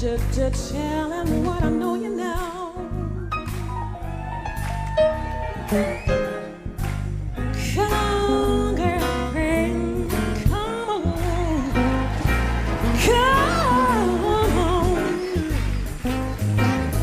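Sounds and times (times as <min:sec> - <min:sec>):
woman singing: 0:00.0 - 0:03.1, 0:07.6 - 0:12.1, 0:12.8 - 0:15.9
jazz band playing: 0:00.0 - 0:17.0.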